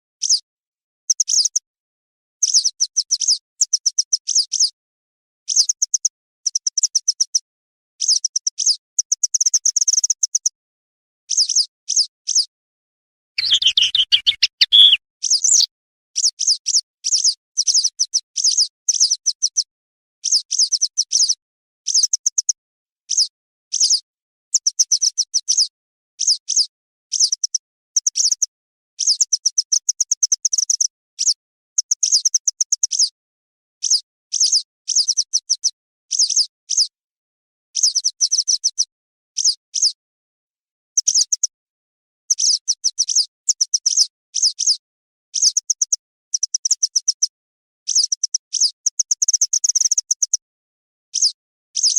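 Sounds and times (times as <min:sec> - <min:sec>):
wagtail high chirps: 0:13.4 - 0:15.7.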